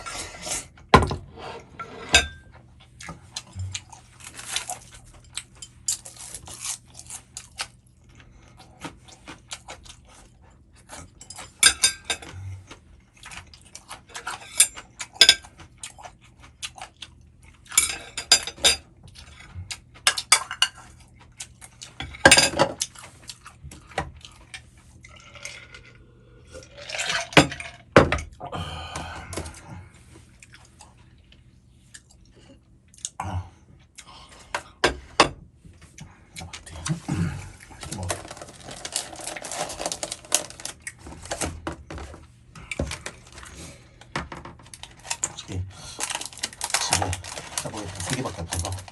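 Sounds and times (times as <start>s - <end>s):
utensils scraping a dish: 0.0s - 2.4s
chewing noodles: 2.8s - 11.6s, 12.2s - 17.8s.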